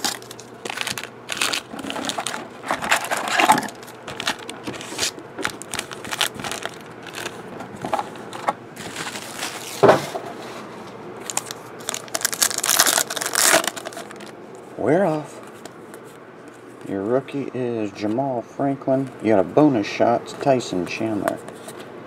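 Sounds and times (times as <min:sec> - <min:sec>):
plastic wrapping ripping: 0:00.0 - 0:07.4, 0:08.8 - 0:09.8, 0:11.2 - 0:14.3
plastic wrapping rustling and crackling: 0:00.0 - 0:10.2, 0:11.2 - 0:14.4.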